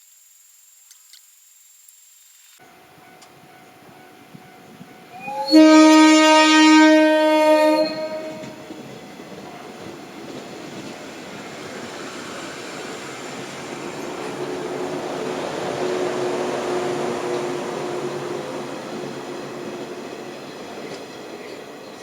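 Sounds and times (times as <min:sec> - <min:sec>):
train horn blast: 0:02.6 - 0:10.1, 0:14.1 - 0:20.1
train running rumble: 0:02.7 - 0:22.0.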